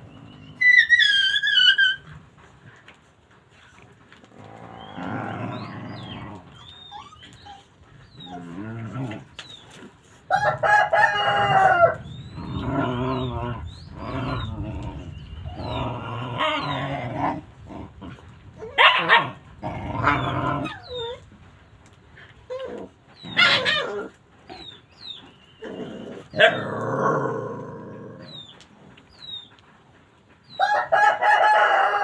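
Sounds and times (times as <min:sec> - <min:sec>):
dog whining and howling: 0:00.0 - 0:02.2, 0:04.6 - 0:09.5, 0:10.3 - 0:17.4, 0:18.5 - 0:21.4, 0:22.4 - 0:29.6.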